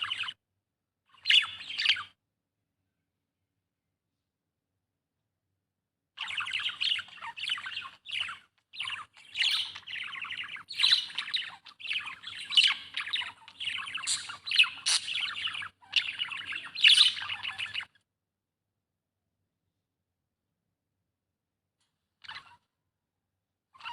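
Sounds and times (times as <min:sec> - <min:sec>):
budgerigar chirping: 0:06.3 - 0:17.9.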